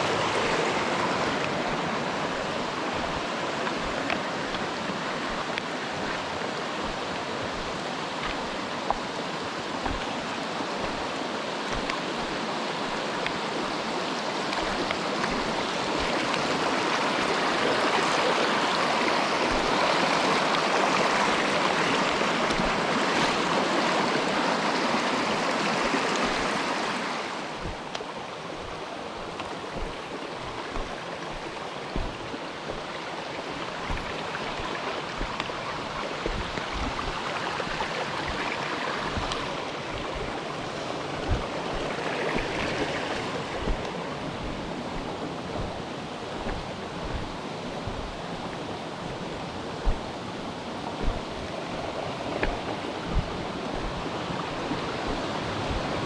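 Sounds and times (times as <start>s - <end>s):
mountain stream rushing: 0.0s - 56.0s
low thumps: 27.6s - 28.0s, 28.6s - 32.9s, 33.8s - 35.4s, 41.1s - 48.2s, 49.1s - 50.2s, 51.0s - 56.0s.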